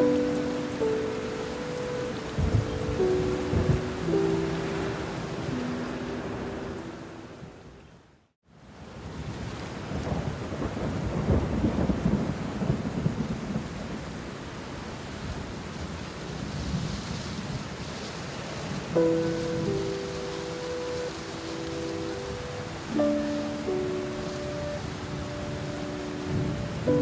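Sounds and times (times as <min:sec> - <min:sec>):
soft sustained music tones: 0:00.0 - 0:07.8, 0:19.0 - 0:27.0
rain: 0:00.0 - 0:27.0
rolling thunder: 0:02.2 - 0:04.9, 0:09.9 - 0:14.1.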